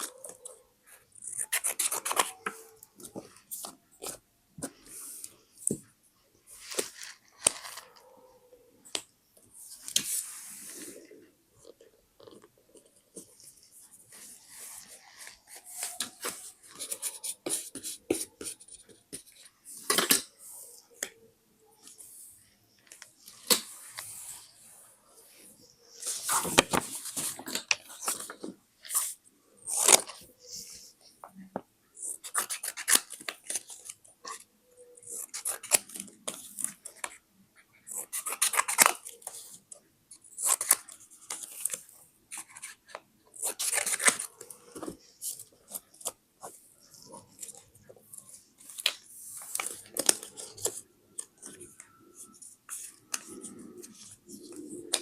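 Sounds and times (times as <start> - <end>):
scissors snipping paper: 32.0 - 34.0, 35.0 - 37.1, 37.9 - 39.4, 42.4 - 44.4.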